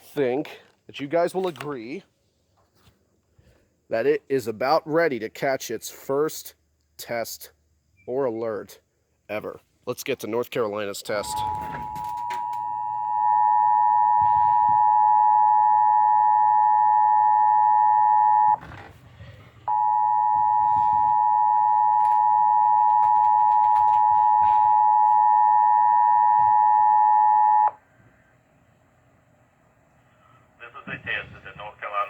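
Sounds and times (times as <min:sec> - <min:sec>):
two-tone alert signal over radio: 0:11.2 - 0:17.1.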